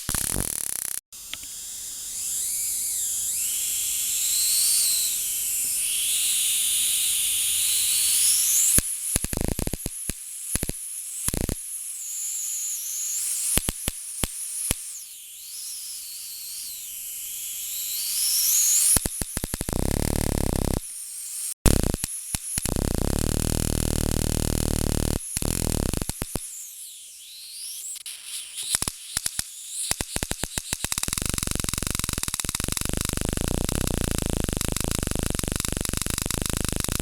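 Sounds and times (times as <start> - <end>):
electric arc snaps: 0.0 - 1.5, 8.7 - 11.6, 18.8 - 20.8, 21.7 - 26.5, 28.6 - 37.0
electric arc hiss and whine: 0.0 - 37.0.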